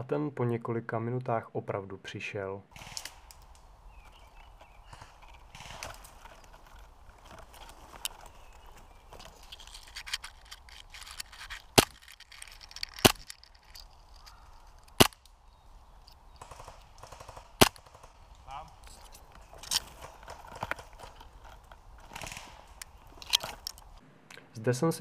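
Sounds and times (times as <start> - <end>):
airsoft gun shots: 16.4 - 18.2, 22.1 - 22.7.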